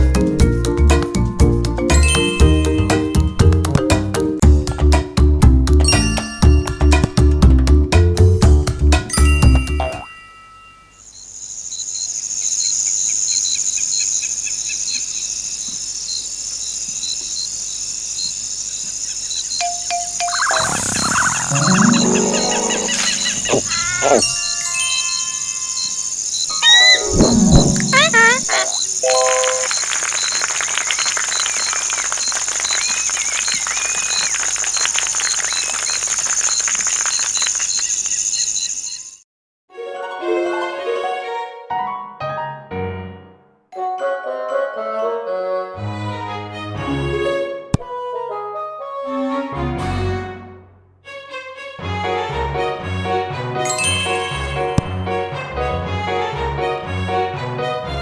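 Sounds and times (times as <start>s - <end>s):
crickets chirping: 10.8s - 27.0s, 27.8s - 39.2s
dense crackle of ticks: 29.4s - 38.7s.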